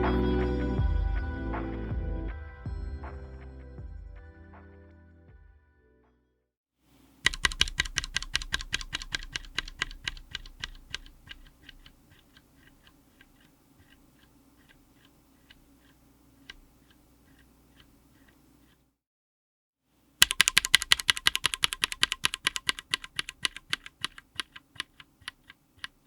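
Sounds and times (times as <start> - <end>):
mechanical keyboard typing: 7.2 - 18.8, 20.2 - 26.0.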